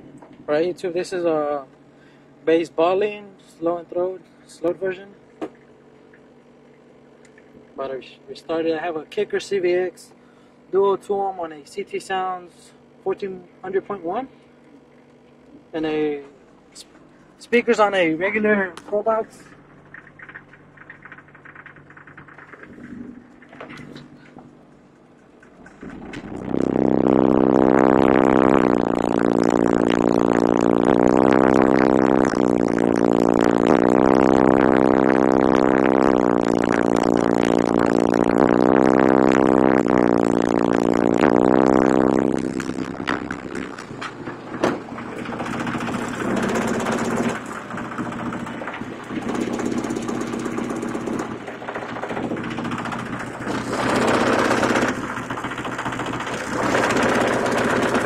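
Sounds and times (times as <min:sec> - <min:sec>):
bass-heavy slowed music on subwoofer: 0:25.6 - 0:58.0.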